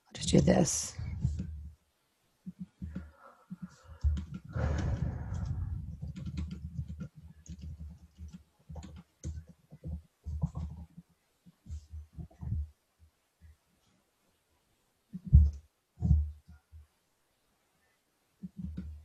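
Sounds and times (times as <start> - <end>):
typing on laptop keyboard: 2.4 - 11.1, 18.4 - 19.0.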